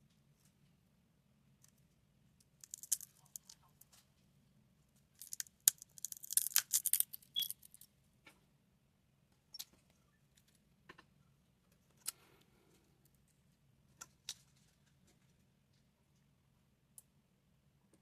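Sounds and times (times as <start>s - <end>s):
crackling scraping and clicking: 1.6s - 4.2s, 5.2s - 8.4s, 11.7s - 16.3s.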